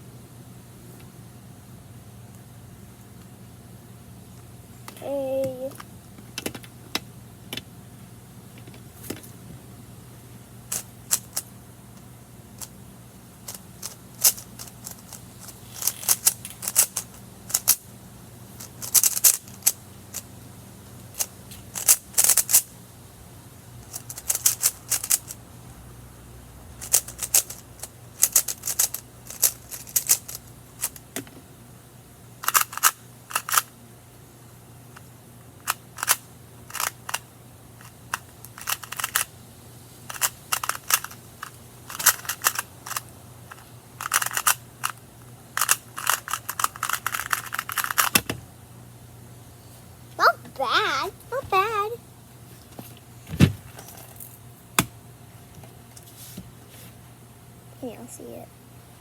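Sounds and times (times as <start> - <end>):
plastic puzzle cube clicking: 40.1 - 41.2, 41.9 - 44.6, 45.6 - 48.3.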